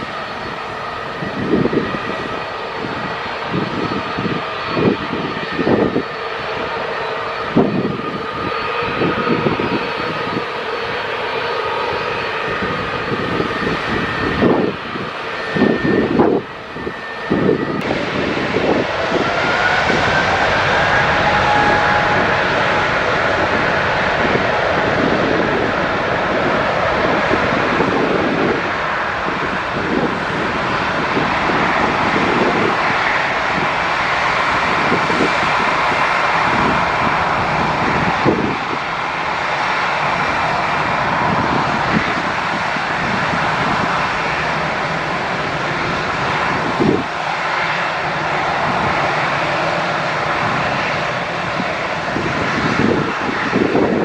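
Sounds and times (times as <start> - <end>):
jet engines roaring: 0.0 - 54.0
wind buffeting microphone: 0.0 - 54.0.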